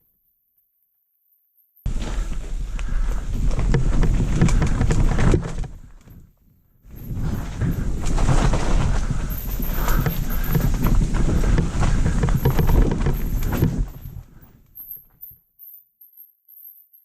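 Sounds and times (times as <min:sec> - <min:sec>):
wind rumbling on microphone: 0:01.9 - 0:14.6.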